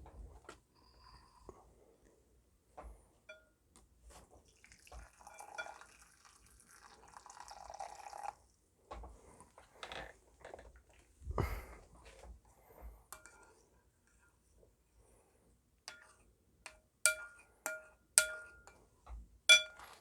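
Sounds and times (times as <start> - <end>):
tea pouring into a glass: 4.4 - 8.6.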